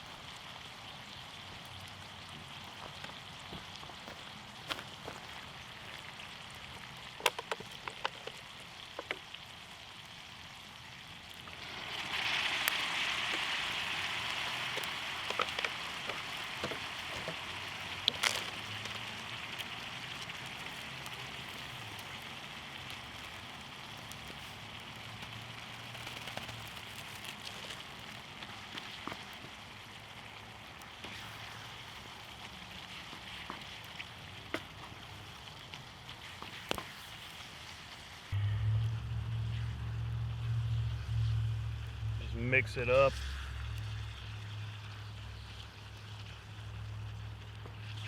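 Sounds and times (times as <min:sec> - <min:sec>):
meat sizzling in a pan: 0:00.0 - 0:38.3
sharp crackles: 0:11.2 - 0:48.0.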